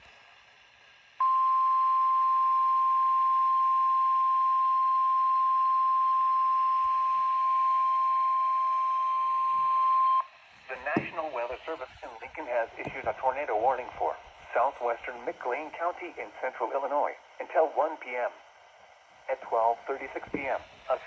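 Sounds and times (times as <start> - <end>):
loud steady alarm tone: 1.2 - 12.0
faint radio hiss: 10.2 - 21.0.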